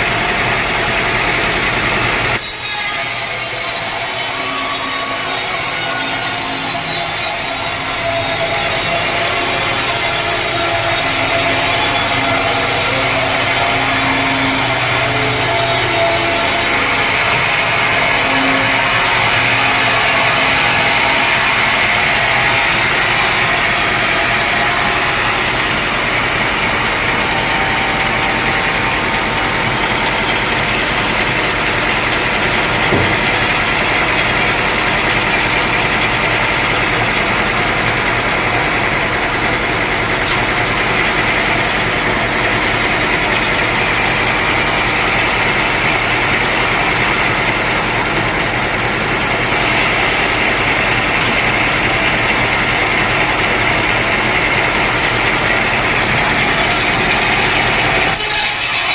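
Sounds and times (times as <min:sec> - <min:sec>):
sawmill saw machinery running: 0:00.0 - 0:58.9
brief knock: 0:32.9 - 0:33.4.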